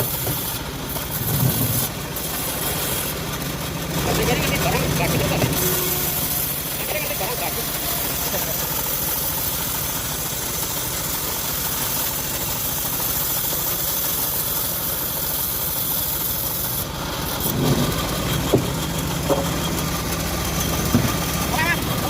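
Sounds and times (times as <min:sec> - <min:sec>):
sawmill engine running: 0:00.0 - 0:22.0
sharp knocks: 0:17.5 - 0:19.6, 0:20.9 - 0:21.2.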